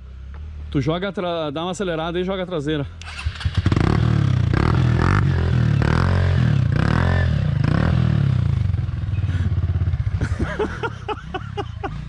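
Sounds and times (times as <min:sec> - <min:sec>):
motorcycle engine revving: 0:03.0 - 0:12.0.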